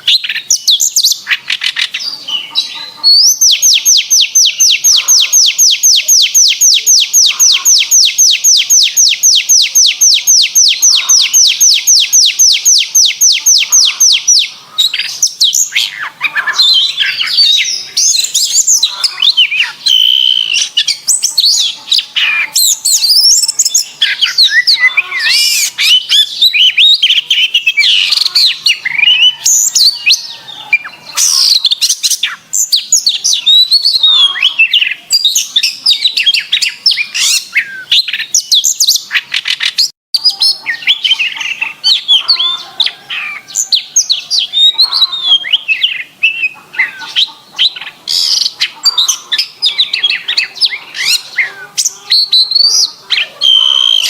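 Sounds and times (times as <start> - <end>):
canary singing: 0.0 - 54.0.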